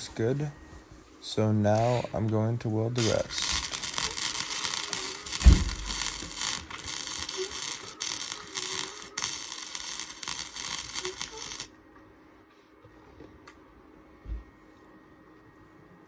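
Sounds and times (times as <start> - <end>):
arc welder crackling and hissing: 0.0 - 11.8
low thump: 5.4 - 5.8.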